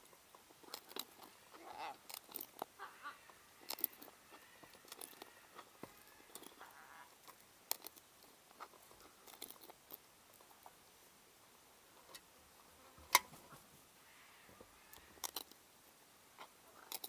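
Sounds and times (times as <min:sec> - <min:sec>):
parrots cracking food: 0:00.4 - 0:10.8, 0:14.9 - 0:15.6, 0:16.4 - 0:17.0
faint bird calls: 0:00.8 - 0:07.2, 0:13.5 - 0:15.4.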